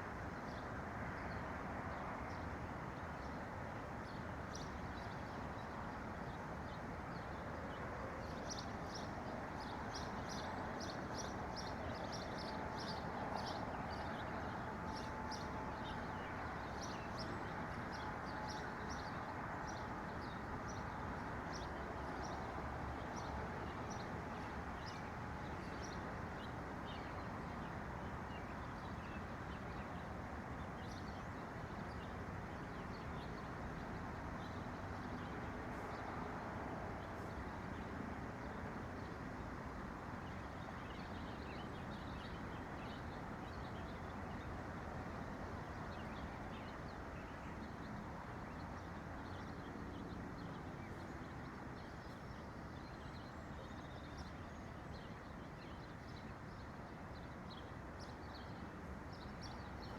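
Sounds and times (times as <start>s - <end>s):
small songbirds chirping: 8.3s - 30.1s, 40.2s - 59.9s.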